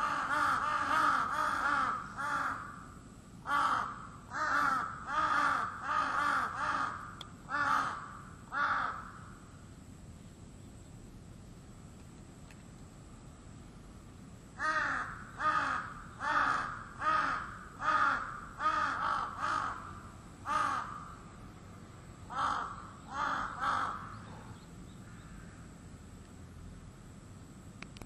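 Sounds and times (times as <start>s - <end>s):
crow cawing: 0.0s - 9.4s, 14.6s - 21.2s, 22.3s - 25.6s.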